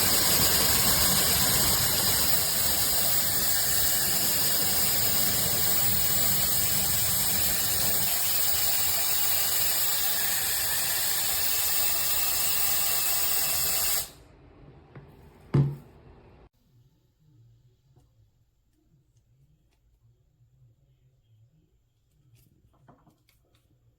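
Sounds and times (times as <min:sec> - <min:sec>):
hair dryer running: 0:00.0 - 0:14.2.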